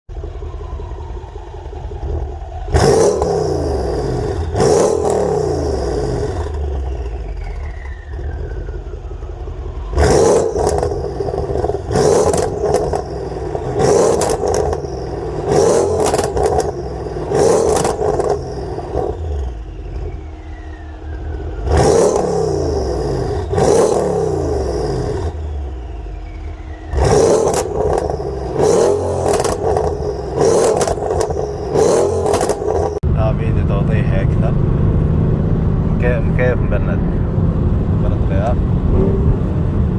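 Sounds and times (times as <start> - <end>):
car engine revving: 2.0 - 39.9
faint falling whistle: 6.7 - 9.3, 25.4 - 26.9
exhaust crackles and pops: 10.0 - 19.2, 25.9 - 39.9.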